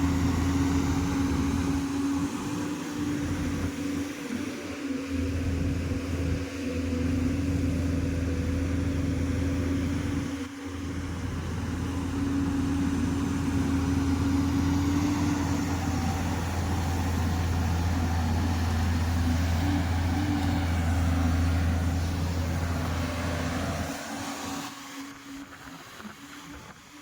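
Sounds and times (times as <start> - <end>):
heavy machine diesel engine droning: 0.0 - 27.0.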